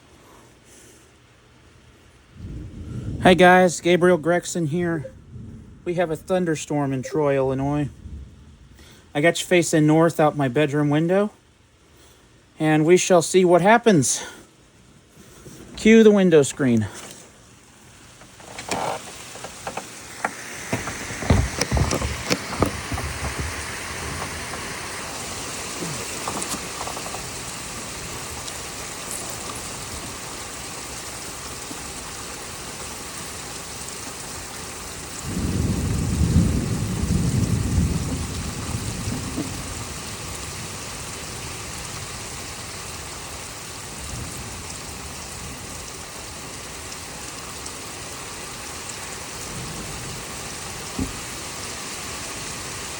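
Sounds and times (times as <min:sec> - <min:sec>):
heavy rain falling: 0:00.0 - 0:52.9
low rumble of thunder: 0:02.3 - 0:10.1, 0:18.1 - 0:43.2, 0:43.8 - 0:46.6, 0:49.2 - 0:51.4
sharp knocks: 0:18.2 - 0:24.8.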